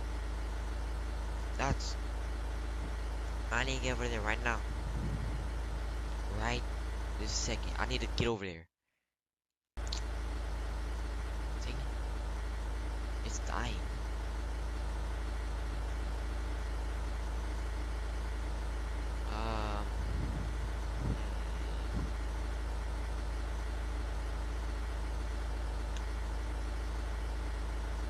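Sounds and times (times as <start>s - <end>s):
vehicle engine drone: 0.0s - 8.6s, 9.8s - 28.0s.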